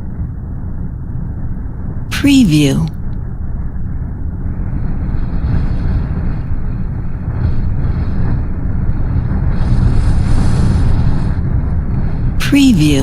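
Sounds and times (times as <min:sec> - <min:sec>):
strong gusting wind: 0:03.0 - 0:12.4.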